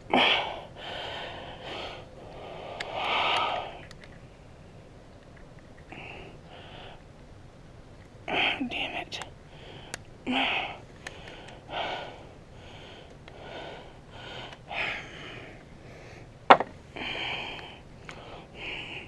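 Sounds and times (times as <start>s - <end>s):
man breathing hard: 0.0s - 4.0s, 5.9s - 7.0s, 9.5s - 19.0s.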